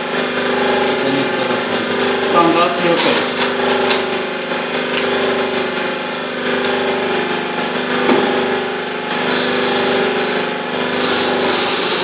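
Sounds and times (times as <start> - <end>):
machine humming: 0.0 - 12.0.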